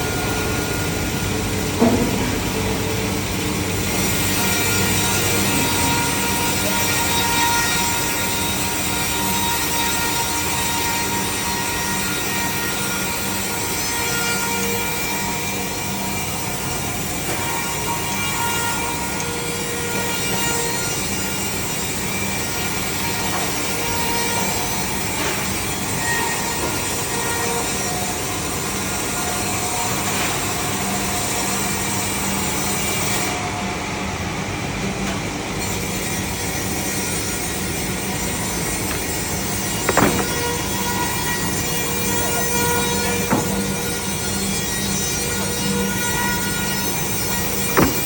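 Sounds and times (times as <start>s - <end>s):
short sharp knocks: 38.8s - 40.7s, 47.7s - 48.0s.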